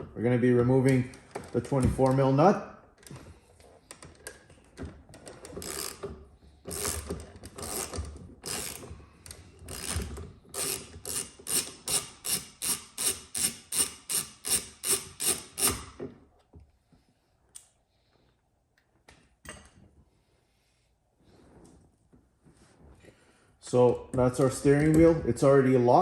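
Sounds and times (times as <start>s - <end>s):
ratchet wrench clicking: 5.4s - 6.1s, 6.7s - 8.9s, 9.7s - 16.0s.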